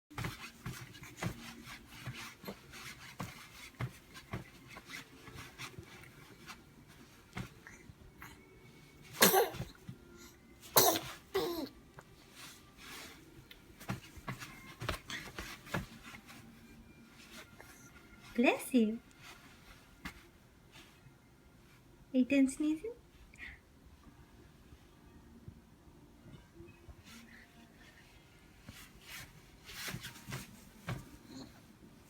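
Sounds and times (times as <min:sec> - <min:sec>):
person sneezing: 0:09.2 - 0:09.7, 0:10.8 - 0:11.6
faint rustling: 0:26.9 - 0:32.0.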